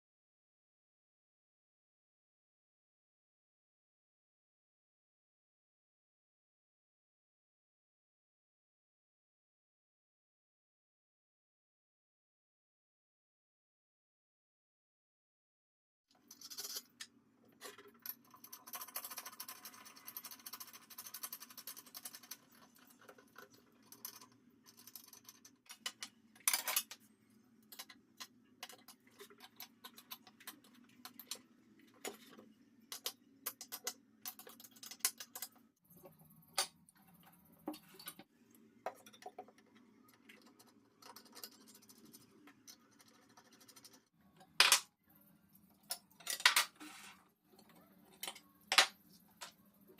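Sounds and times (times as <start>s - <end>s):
tools and parts clicking: 16.2s - 27.0s, 32.9s - 35.7s, 45.8s - 49.6s.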